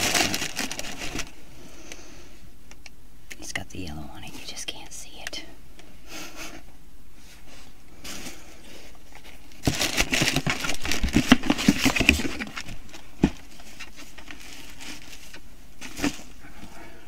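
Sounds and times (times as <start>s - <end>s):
packaging rustling and crinkling: 0.0s - 1.4s, 7.3s - 16.8s.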